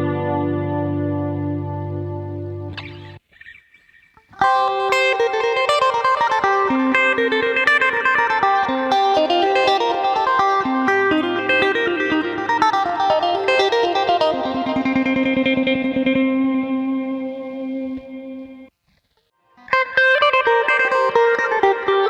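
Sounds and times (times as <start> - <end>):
electric guitar picked melody: 0.0 - 18.7, 19.5 - 22.0.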